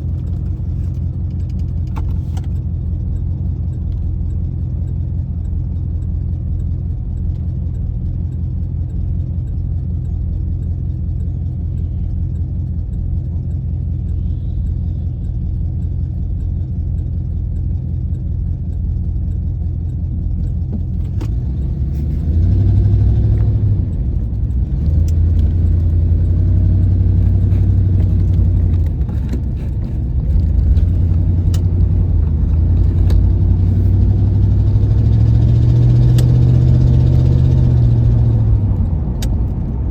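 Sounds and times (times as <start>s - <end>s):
car engine and exhaust droning: 0.0s - 39.9s.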